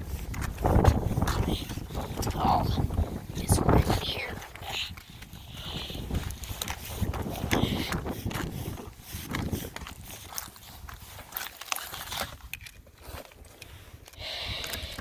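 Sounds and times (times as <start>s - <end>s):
wind rumble on microphone: 0.0s - 11.3s
crunching on snow and ice: 0.0s - 15.0s.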